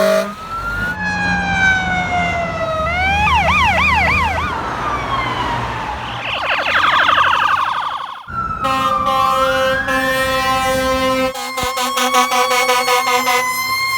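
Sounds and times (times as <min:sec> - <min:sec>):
air horn blasting: 0:00.0 - 0:00.4, 0:08.6 - 0:13.6
fire truck siren: 0:00.0 - 0:13.9.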